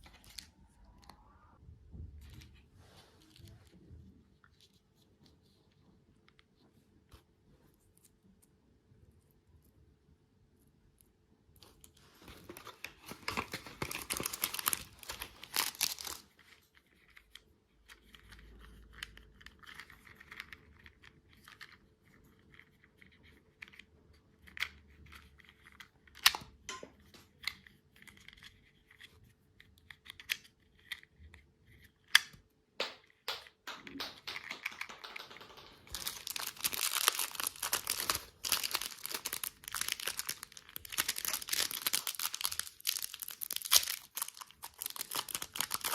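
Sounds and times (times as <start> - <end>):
plastic packaging crinkling and tearing: 12.2 - 16.5, 35.9 - 45.9
sharp taps and clicks: 32.2 - 37.2.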